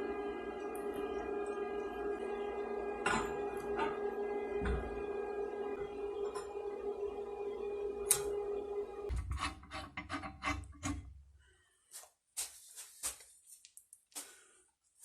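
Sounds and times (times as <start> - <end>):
hand file scraping: 9.1 - 11.0.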